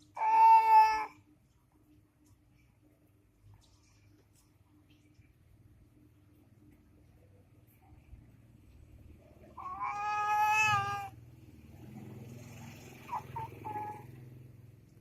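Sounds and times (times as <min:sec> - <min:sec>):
baby wailing cry: 0:00.1 - 0:01.2, 0:09.6 - 0:11.2.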